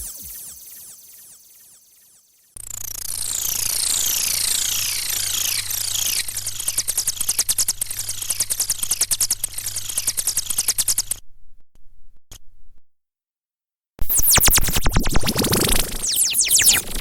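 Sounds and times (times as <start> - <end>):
falling whistle-like tones: 16.1 - 16.8.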